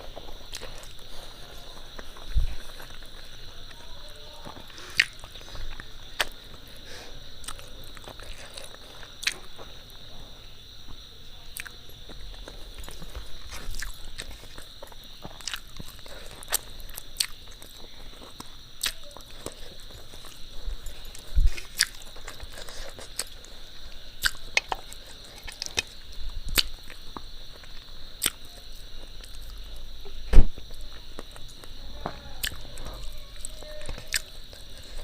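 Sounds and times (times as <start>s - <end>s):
chewing and eating: 0.0s - 35.0s
faint steady hiss: 0.0s - 35.0s
mouth clicks and smacks: 4.7s - 6.4s, 24.2s - 28.5s.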